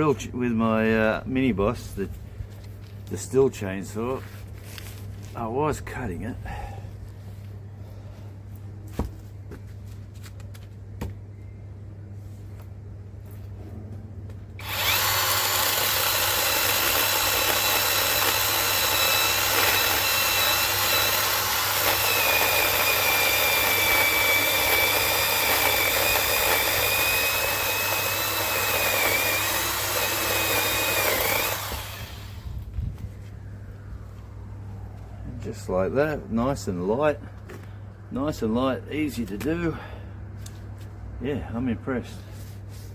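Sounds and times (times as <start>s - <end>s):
electric chainsaw cutting wood: 14.6s - 32.5s.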